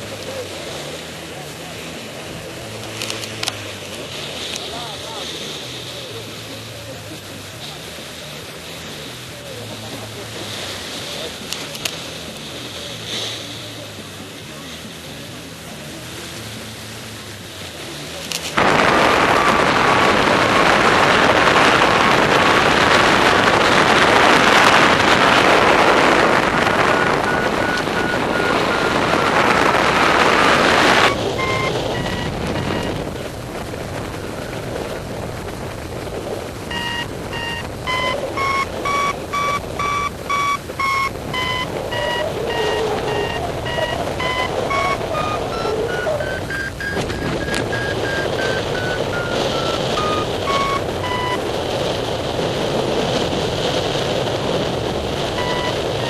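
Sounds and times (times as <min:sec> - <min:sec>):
wind rushing over microphone: 0:16.5 - 0:56.0
variometer beeping: 0:18.3 - 0:33.3, 0:36.6 - 0:51.6, 0:55.1 - 0:56.0.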